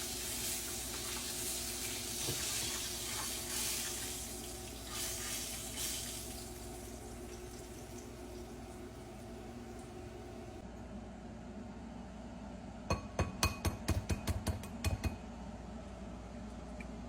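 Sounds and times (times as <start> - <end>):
water running from a tap into a sink: 0.0 - 10.6.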